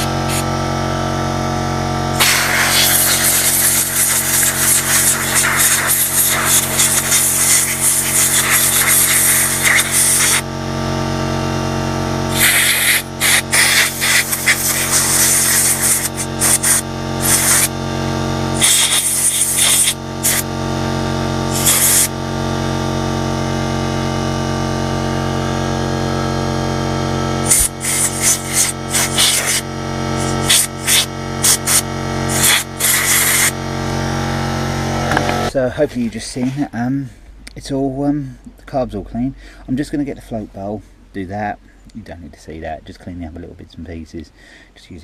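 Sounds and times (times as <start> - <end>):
spray can hissing: 0.0 - 0.5, 2.2 - 10.4, 12.3 - 17.7, 18.6 - 20.5, 21.5 - 22.1, 27.4 - 29.6, 30.2 - 33.5
air line hissing blasts: 0.0 - 0.7, 2.1 - 10.5, 12.2 - 17.8, 18.5 - 20.5, 21.4 - 22.2, 27.4 - 33.7
mechanical hum: 0.0 - 45.0.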